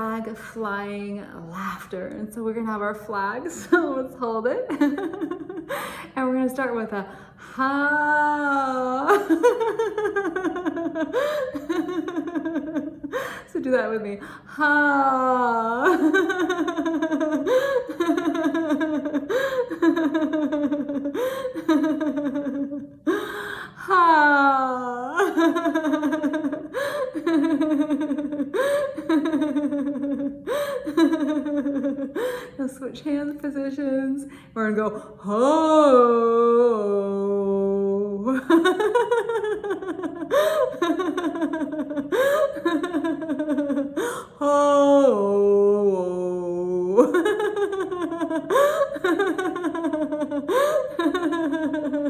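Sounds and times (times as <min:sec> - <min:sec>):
woman laughing: 0:03.6 - 0:06.0, 0:07.7 - 0:13.8, 0:14.8 - 0:23.3, 0:23.9 - 0:32.5, 0:38.2 - 0:44.7, 0:46.8 - 0:52.0.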